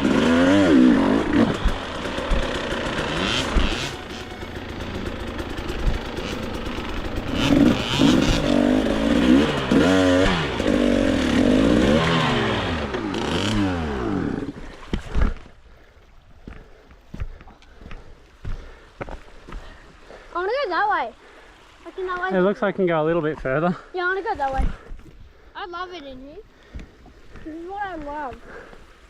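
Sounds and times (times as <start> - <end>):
dirt bike engine revving: 0.0 - 14.7
knocks from riding over rocks: 1.4 - 3.9.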